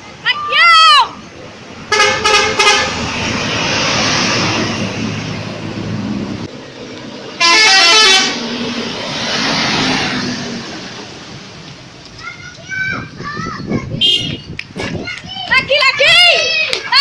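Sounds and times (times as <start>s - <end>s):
buses and traffic passing: 0.0s - 17.0s
multi-tone bus horn melody: 1.9s - 3.1s, 7.4s - 8.6s, 14.0s - 14.4s.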